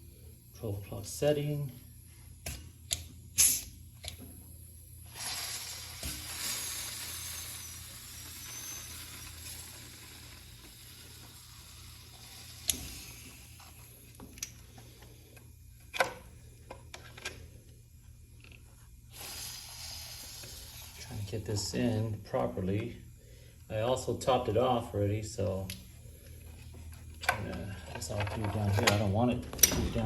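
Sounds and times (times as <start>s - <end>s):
air hissing into tyre: 3.3s - 3.8s, 5.0s - 14.0s, 19.1s - 21.2s.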